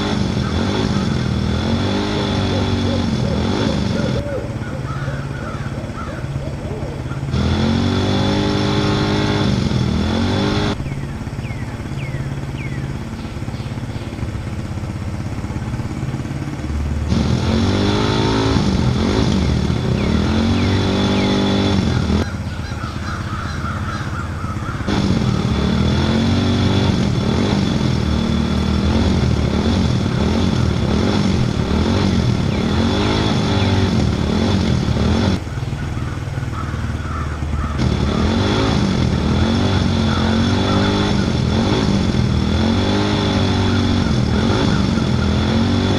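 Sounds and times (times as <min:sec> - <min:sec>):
vehicle engine revving: 0:00.0 - 0:45.9.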